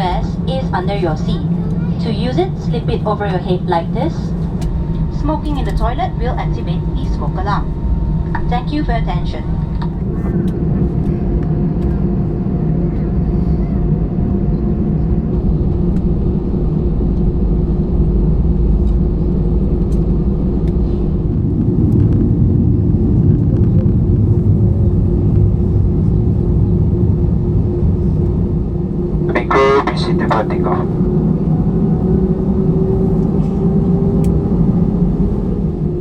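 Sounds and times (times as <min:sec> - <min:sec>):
aircraft cabin low rumble: 0:00.0 - 0:36.0
steady engine hum: 0:00.0 - 0:36.0.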